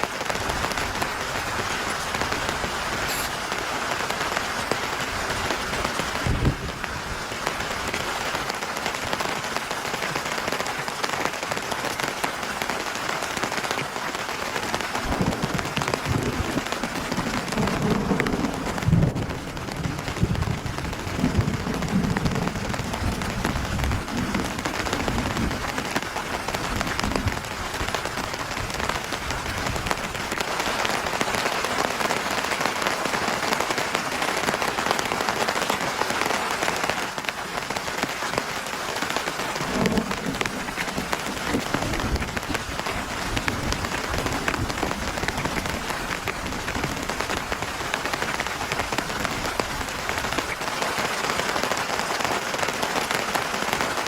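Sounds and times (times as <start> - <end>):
heavy rain: 0.0 - 54.0.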